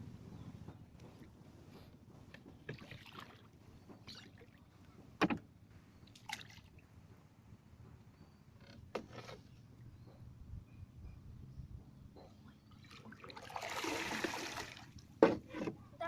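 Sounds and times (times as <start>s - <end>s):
paddles splashing in water: 2.6s - 4.6s, 12.9s - 15.4s.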